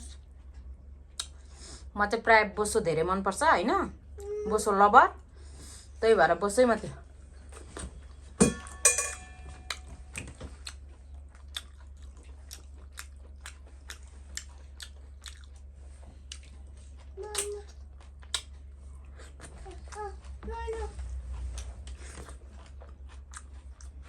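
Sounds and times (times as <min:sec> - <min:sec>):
wet mouth clicks: 0:01.2 - 0:01.4, 0:18.2 - 0:18.5
loud ringing clinks: 0:08.4 - 0:09.7
chewing pork: 0:09.6 - 0:24.0.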